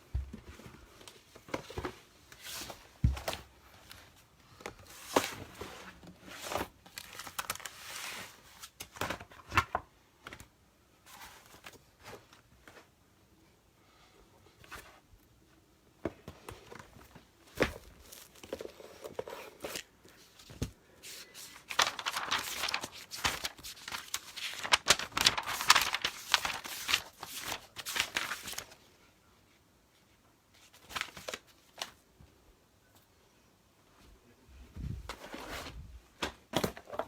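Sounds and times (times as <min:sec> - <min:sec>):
paper rustling and crinkling: 0:00.4 - 0:10.4, 0:16.3 - 0:28.9, 0:30.6 - 0:32.0, 0:34.8 - 0:37.0.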